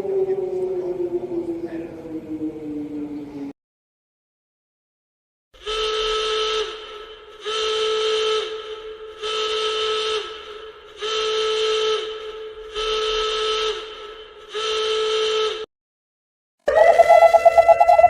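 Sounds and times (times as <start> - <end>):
emergency alarm horn blasts: 5.6 - 15.7, 16.7 - 18.0.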